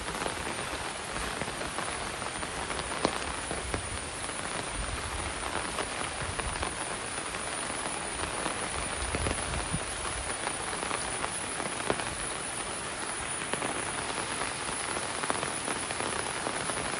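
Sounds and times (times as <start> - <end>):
raindrops ticking: 0.0 - 16.9
steady rain hiss: 0.0 - 16.9.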